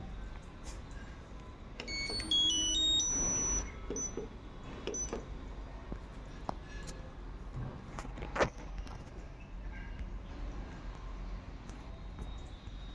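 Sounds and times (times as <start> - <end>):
washing machine beep tune: 1.8 - 4.3, 4.9 - 5.3.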